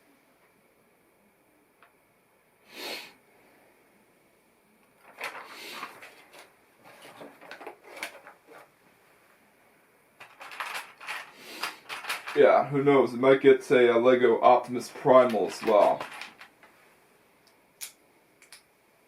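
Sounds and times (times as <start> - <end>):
plastic toy bricks clicking: 10.2 - 12.4, 15.5 - 16.5.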